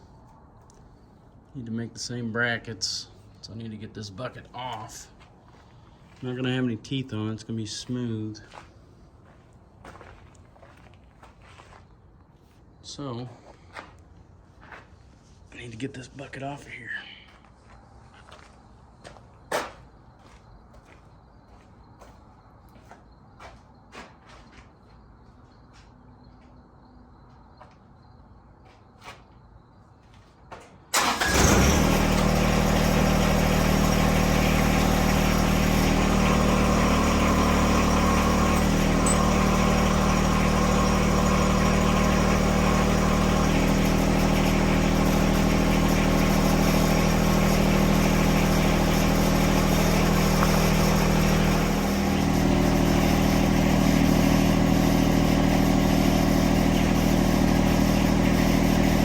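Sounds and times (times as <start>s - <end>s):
tractor diesel engine running: 30.9s - 59.0s.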